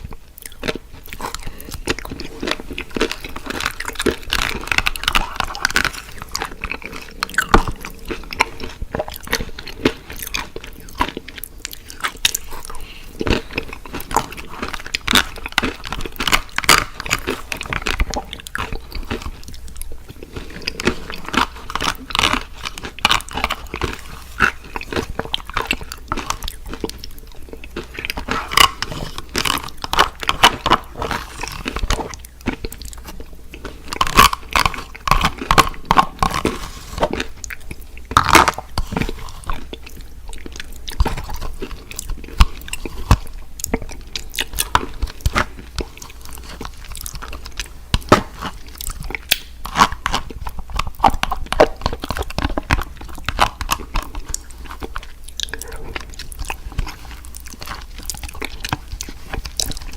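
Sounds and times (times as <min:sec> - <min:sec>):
person chewing crunchy fried food: 0:00.0 - 0:59.9
wet mouth sounds: 0:00.0 - 0:59.9.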